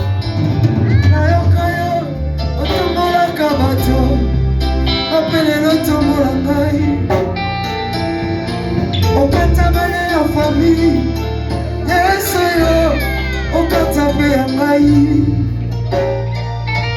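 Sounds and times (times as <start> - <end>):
band with bass and guitar: 0.0 - 16.9
person singing worship song: 11.8 - 15.6.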